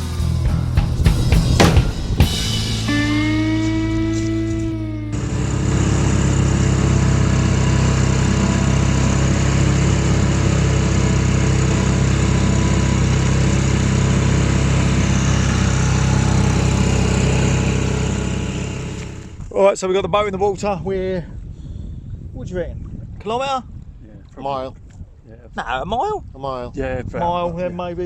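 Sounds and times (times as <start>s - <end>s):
outboard motor running: 0.0s - 19.5s.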